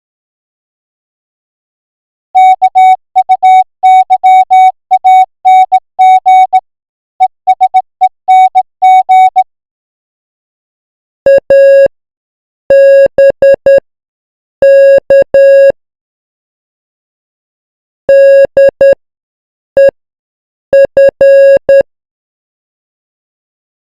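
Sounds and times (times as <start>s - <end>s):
morse code beeps: 2.4s - 6.6s, 7.2s - 9.5s, 11.3s - 11.9s, 12.7s - 13.8s, 14.6s - 15.8s, 18.1s - 19.0s, 20.8s - 21.9s.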